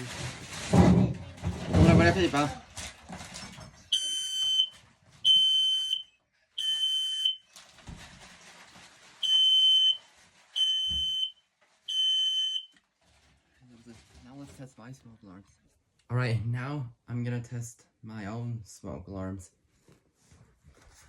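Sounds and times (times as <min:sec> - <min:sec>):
smoke alarm beeps: 0:03.9 - 0:07.5, 0:09.2 - 0:10.0, 0:10.6 - 0:12.8.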